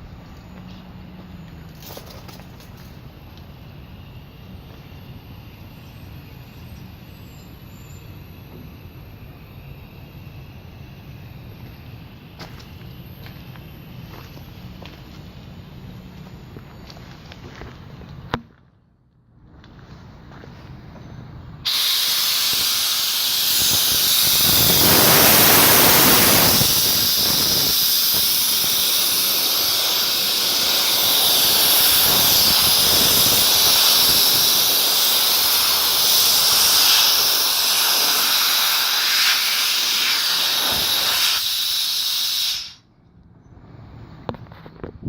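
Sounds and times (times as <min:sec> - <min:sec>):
compressed air hissing: 0:21.6 - 0:42.8.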